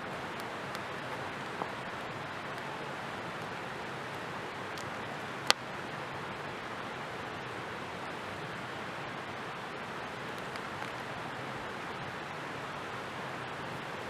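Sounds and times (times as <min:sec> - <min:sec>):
campfire hissing: 0:00.0 - 0:14.0
sharp pop of fire: 0:04.8 - 0:05.7.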